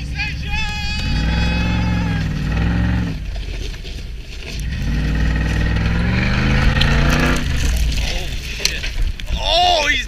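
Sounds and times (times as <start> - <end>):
vehicle engine revving: 0.0 - 3.3, 4.5 - 8.5.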